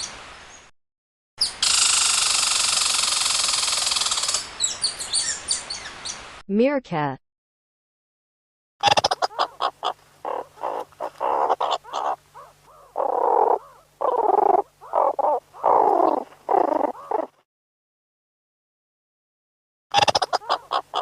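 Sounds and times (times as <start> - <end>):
meerkat calls: 8.8 - 17.4, 20.0 - 21.0.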